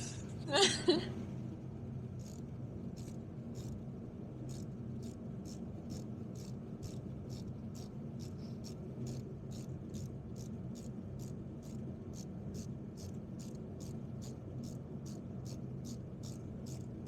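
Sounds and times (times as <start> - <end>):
steady low hum: 0.0 - 17.0
socket ratchet clicking: 4.5 - 17.0.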